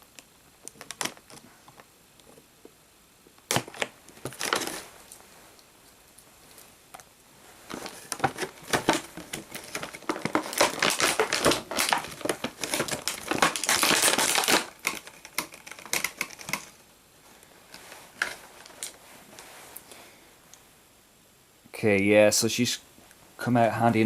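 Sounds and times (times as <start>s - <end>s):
plastic packaging crinkling: 0.1s - 1.9s, 3.4s - 5.2s, 7.6s - 16.9s, 17.6s - 19.4s.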